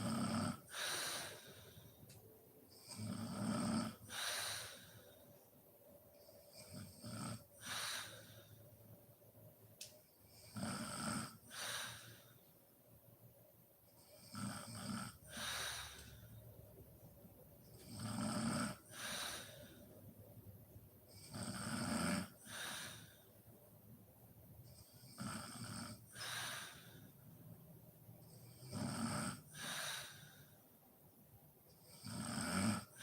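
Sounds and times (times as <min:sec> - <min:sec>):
woman snoring: 0:00.0 - 0:01.8, 0:02.8 - 0:05.1, 0:06.5 - 0:08.6, 0:10.3 - 0:12.2, 0:14.1 - 0:16.2, 0:17.8 - 0:19.8, 0:21.1 - 0:23.2, 0:24.8 - 0:27.1, 0:28.2 - 0:30.6, 0:31.8 - 0:33.0.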